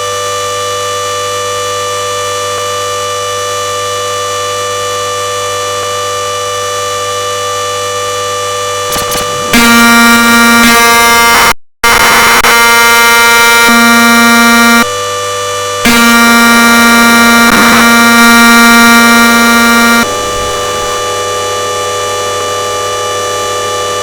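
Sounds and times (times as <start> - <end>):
washing machine spin whine: 0.0 - 9.6, 20.0 - 24.0.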